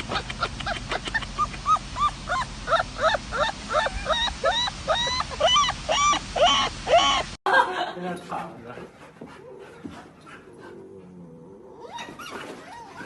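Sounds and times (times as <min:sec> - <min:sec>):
dog yipping: 0:00.1 - 0:07.2.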